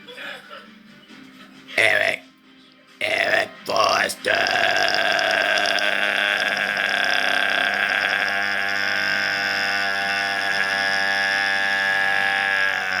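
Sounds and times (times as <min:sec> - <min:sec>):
held drone rich in overtones: 0:03.8 - 0:13.0.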